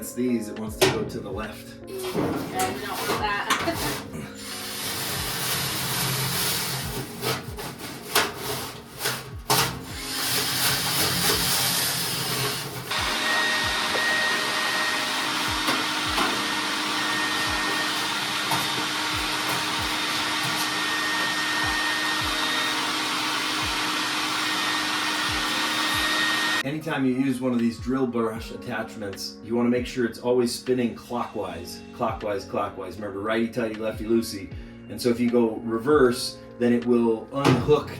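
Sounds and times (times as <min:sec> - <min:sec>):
electric motor whining: 0:09.8 - 0:26.6.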